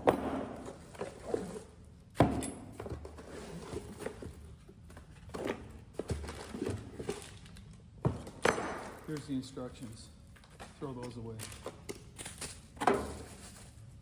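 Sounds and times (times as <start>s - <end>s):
handling and rustling: 9.0s - 14.0s.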